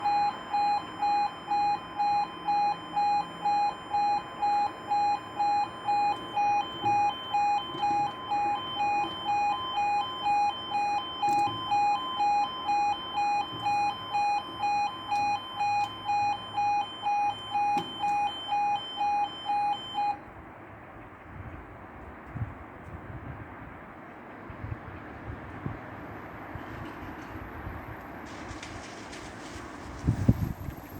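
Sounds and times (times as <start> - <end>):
level crossing alarm two-tone: 0.0 - 20.2.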